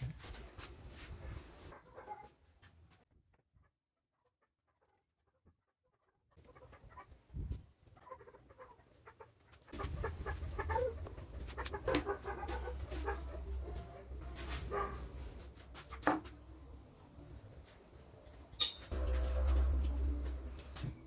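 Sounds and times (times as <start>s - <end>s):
chickens clucking: 6.4s - 21.0s
steady low hum: 9.8s - 21.0s.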